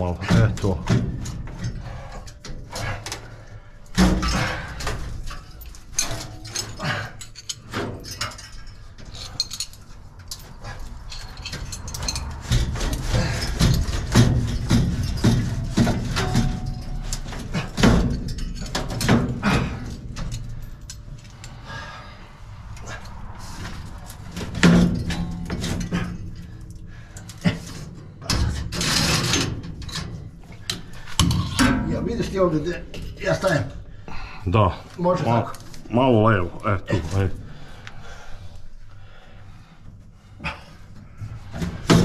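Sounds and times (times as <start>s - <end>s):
metal knocks and clanks: 0.0s - 33.8s, 41.1s - 42.0s.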